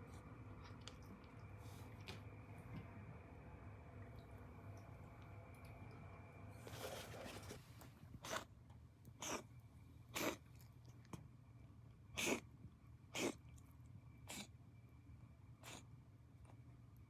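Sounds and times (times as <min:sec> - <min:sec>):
cat reverse sneezing snorts: 0:08.2 - 0:08.5, 0:09.2 - 0:09.4, 0:10.2 - 0:10.4, 0:12.2 - 0:12.4, 0:13.2 - 0:13.4, 0:14.3 - 0:14.5.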